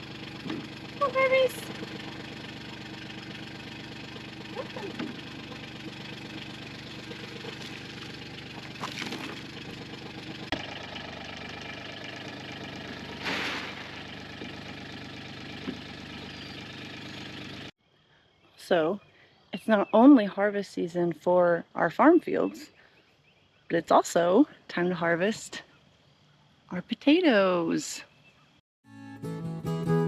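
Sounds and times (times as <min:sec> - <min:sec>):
engine idling: 0:00.0 - 0:17.7.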